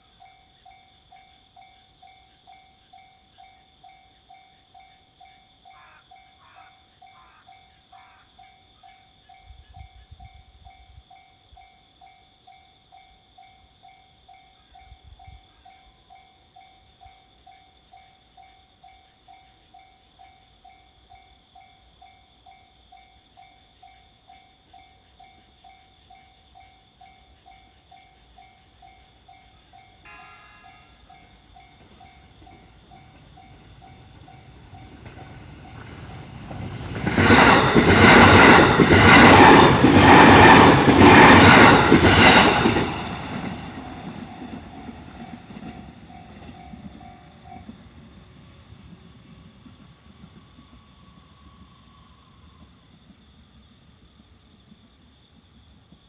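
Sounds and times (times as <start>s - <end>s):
level crossing warning bell: 0.0s - 36.3s.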